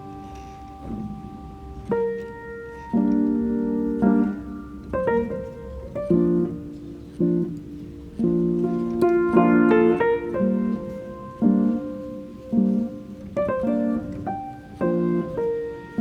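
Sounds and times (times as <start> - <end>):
piano playing chords: 0.0 - 16.0.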